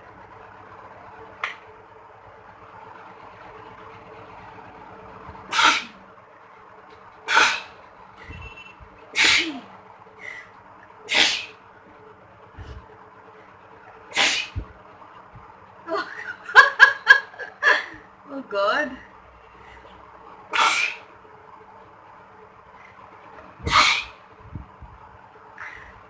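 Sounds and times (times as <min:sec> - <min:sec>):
woman sneezing: 0:09.2 - 0:09.7, 0:14.1 - 0:14.6.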